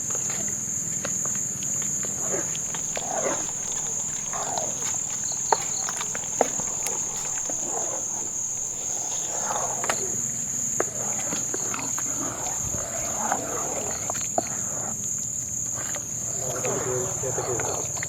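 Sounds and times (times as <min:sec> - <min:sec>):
insects droning: 0:02.3 - 0:10.1.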